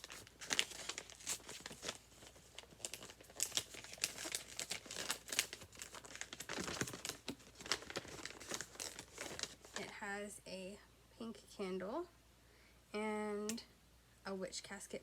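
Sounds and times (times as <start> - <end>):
packaging crinkling and tearing: 0.0 - 9.9.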